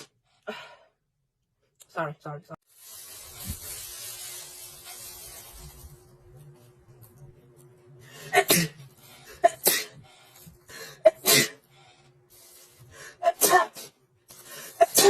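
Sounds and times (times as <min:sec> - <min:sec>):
woman sneezing: 0:11.1 - 0:11.6, 0:13.2 - 0:13.9.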